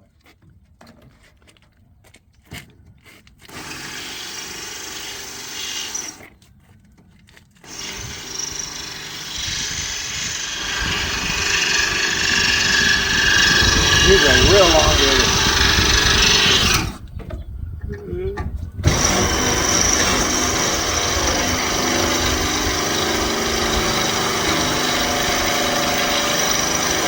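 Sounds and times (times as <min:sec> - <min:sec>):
power drill boring rivets: 0:07.6 - 0:17.0, 0:18.8 - 0:27.0.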